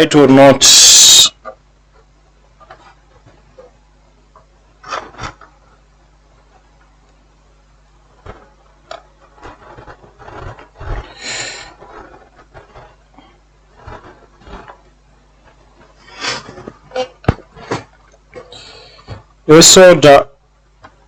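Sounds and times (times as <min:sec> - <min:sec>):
scraping and rubbing: 0:01.8 - 0:06.8, 0:08.0 - 0:19.3.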